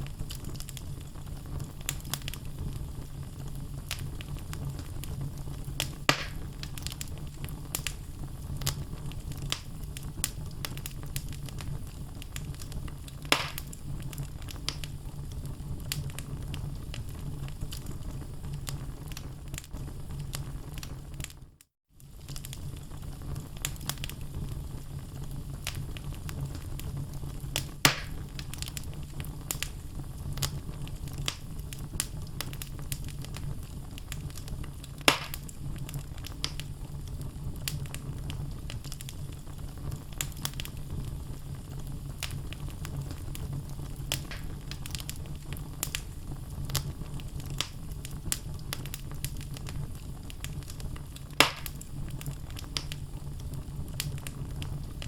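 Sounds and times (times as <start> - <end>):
fire crackling: 0.0 - 55.0
fire rumbling: 0.0 - 55.0
sharp wood pops: 6.1 - 6.4, 13.3 - 13.6, 27.9 - 28.2, 35.1 - 35.4, 51.4 - 51.7.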